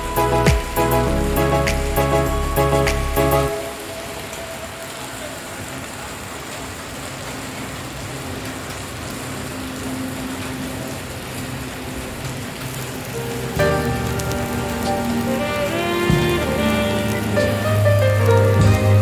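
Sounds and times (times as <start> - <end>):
music track: 0.0 - 4.9, 13.2 - 19.0
steady rain hiss: 0.0 - 19.0.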